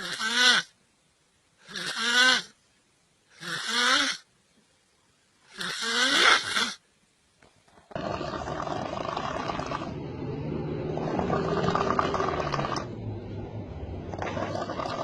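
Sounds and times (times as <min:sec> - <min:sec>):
person snoring: 0:08.0 - 0:13.5.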